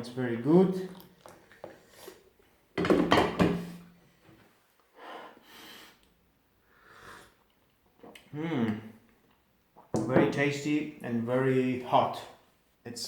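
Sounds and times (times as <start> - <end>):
person sipping coffee: 0.9 - 2.3
person humming: 8.3 - 8.9.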